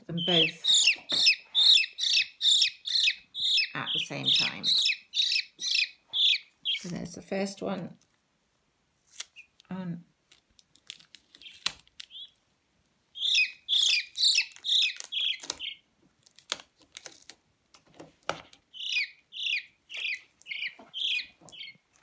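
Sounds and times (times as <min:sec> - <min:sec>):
peachick cheeping: 0:00.0 - 0:06.9, 0:13.2 - 0:15.8, 0:18.8 - 0:21.8.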